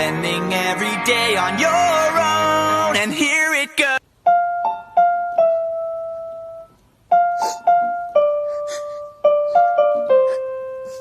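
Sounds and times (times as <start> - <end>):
slow piano melody: 4.2 - 11.0.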